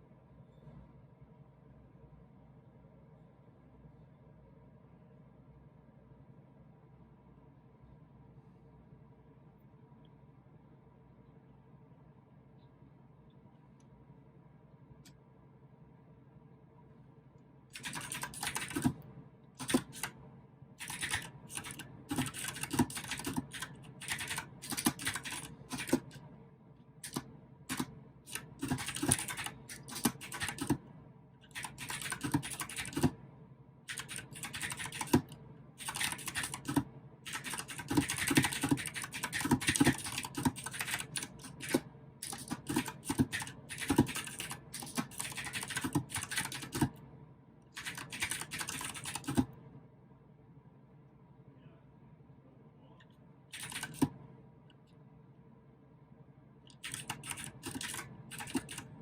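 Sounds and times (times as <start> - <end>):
clicky mechanical keyboard typing: 17.7 - 20.2, 20.8 - 26.3, 27.0 - 30.8, 31.4 - 33.2, 33.9 - 47.0, 47.8 - 49.6, 53.5 - 54.2, 56.7 - 59.0.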